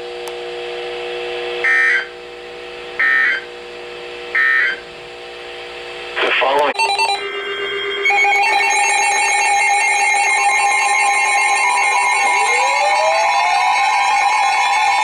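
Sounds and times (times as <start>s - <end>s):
shrill electronic alarm tone: 1.6s - 2.1s, 3.0s - 3.5s, 4.4s - 4.8s, 6.8s - 15.0s
rising alert tone: 6.8s - 15.0s.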